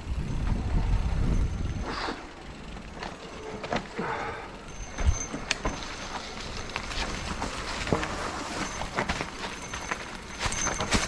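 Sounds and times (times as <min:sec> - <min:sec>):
wind rumble on microphone: 0:00.0 - 0:02.2
bike rattles and knocks: 0:00.0 - 0:11.0.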